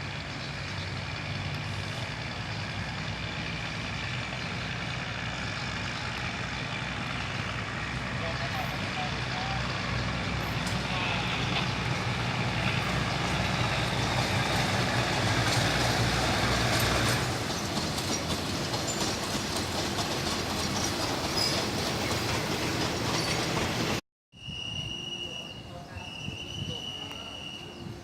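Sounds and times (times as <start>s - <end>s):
diesel train engine running: 0.0s - 28.0s
train wheels clacking and squealing: 0.0s - 28.0s.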